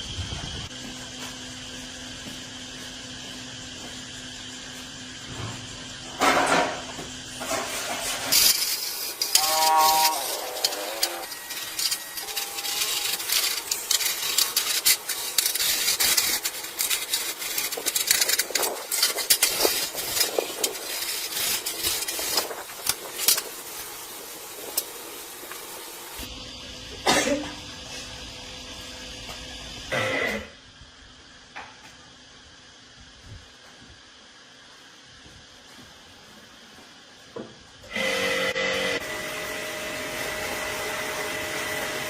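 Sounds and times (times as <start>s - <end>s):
hand tools scraping metal: 7.4s - 25.6s.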